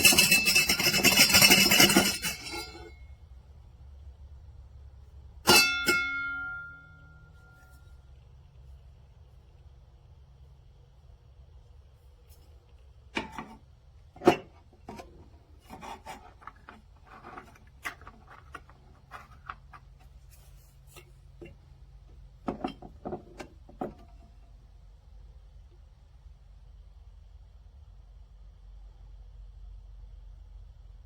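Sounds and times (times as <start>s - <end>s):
short scraping rubs: 0.0s - 3.0s.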